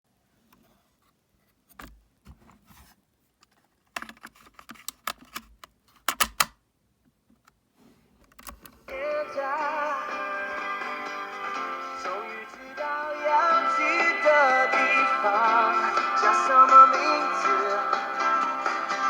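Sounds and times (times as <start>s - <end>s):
cassette recorder keys clicking: 4.0s - 6.6s.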